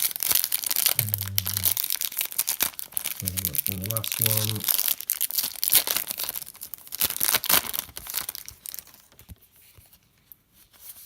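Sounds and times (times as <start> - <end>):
foil wrapper tearing and crinkling: 0.0 - 0.9, 1.9 - 9.4.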